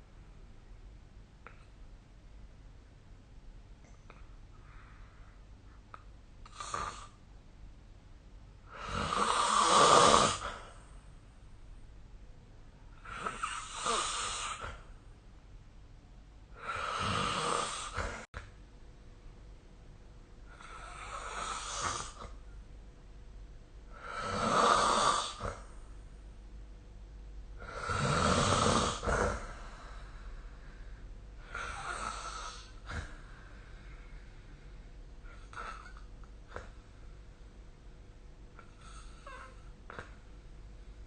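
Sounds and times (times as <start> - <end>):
person snoring: 8.7 - 10.8, 13.0 - 14.9, 16.6 - 18.3, 20.5 - 22.4, 23.9 - 25.7, 27.6 - 30.0, 31.4 - 33.2.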